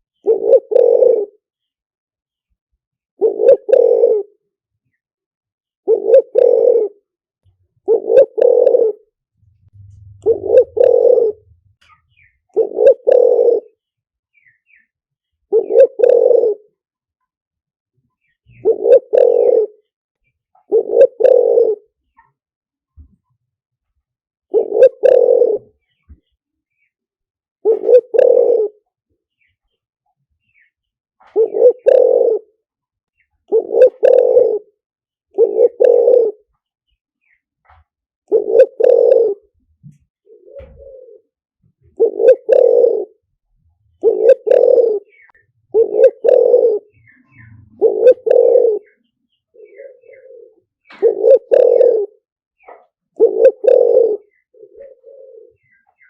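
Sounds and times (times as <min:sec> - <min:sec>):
dove cooing: 0:00.2 - 0:01.4, 0:03.2 - 0:04.5, 0:05.8 - 0:13.8, 0:15.4 - 0:16.8, 0:18.2 - 0:19.9, 0:20.5 - 0:22.4, 0:24.5 - 0:26.2, 0:27.6 - 0:29.0, 0:31.2 - 0:32.6, 0:33.4 - 0:36.6, 0:37.2 - 0:56.0.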